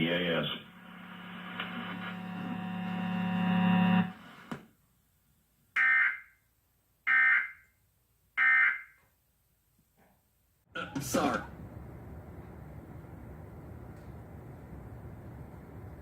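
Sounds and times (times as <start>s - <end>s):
steady buzzing hum: 0.0s - 4.3s.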